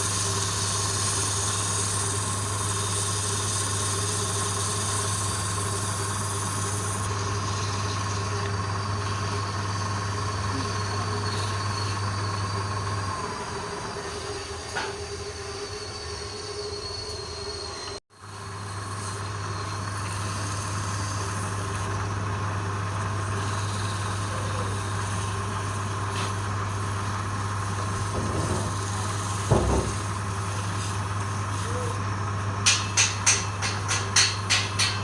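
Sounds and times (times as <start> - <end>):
turning tool scraping wood: 0.0 - 12.4, 18.8 - 32.0
wood lathe humming: 0.0 - 35.0
short knock: 29.5 - 30.0.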